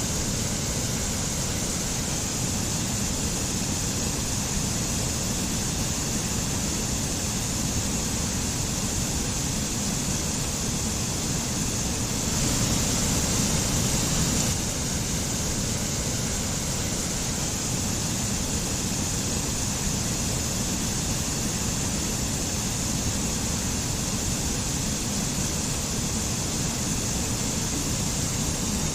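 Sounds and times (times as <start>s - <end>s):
stream water rushing over waterfall: 11.2s - 28.9s.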